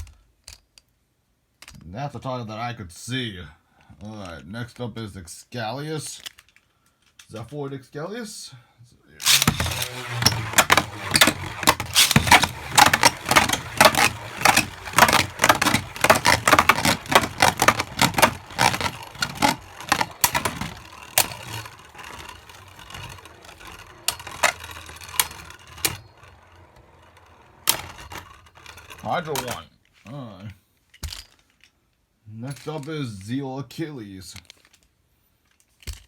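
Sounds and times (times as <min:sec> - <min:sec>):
spinning tops clattering: 0:09.2 - 0:29.6.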